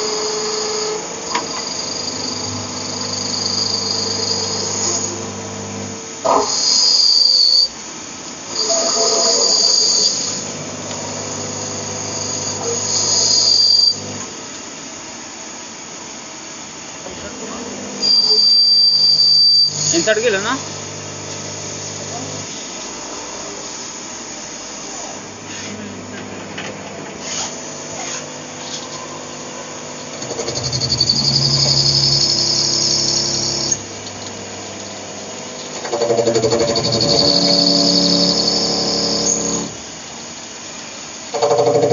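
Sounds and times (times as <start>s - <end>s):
lathe tool squealing: 0.0s - 7.8s, 8.5s - 14.2s, 18.0s - 22.6s, 24.9s - 26.2s, 27.2s - 39.8s
spindle humming: 0.0s - 7.8s, 8.4s - 14.6s, 16.9s - 39.9s
high-pitched pulsing cutting whine: 0.0s - 41.9s
quiet machine running: 0.0s - 41.9s.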